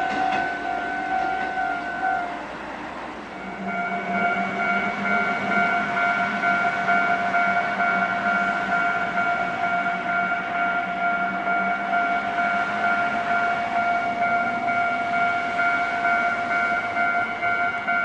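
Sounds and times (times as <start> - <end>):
level-crossing warning bell: 0.0 - 18.0
train running by: 0.0 - 18.0.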